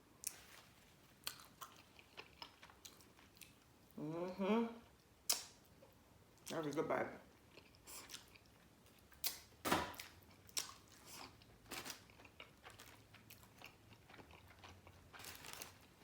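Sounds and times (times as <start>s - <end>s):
person chewing food: 0.2s - 3.7s, 7.3s - 16.0s.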